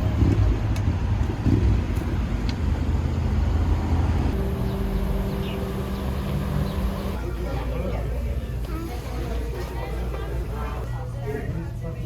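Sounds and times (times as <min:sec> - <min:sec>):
boat engine rumbling: 0:00.0 - 0:07.7
steady low hum: 0:04.3 - 0:07.2.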